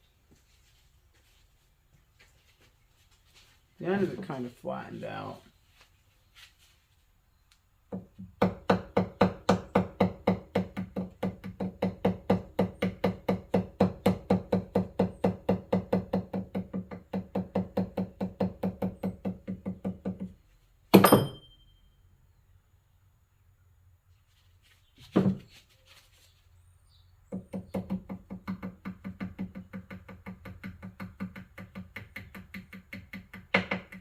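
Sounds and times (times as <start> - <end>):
ringing metallic clang: 21.0 - 22.0.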